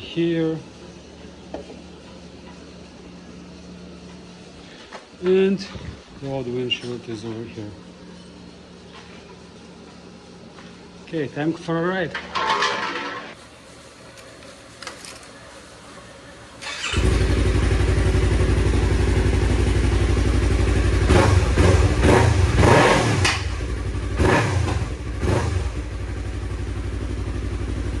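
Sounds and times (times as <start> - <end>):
motorcycle engine starting and idling: 12.2 - 28.0.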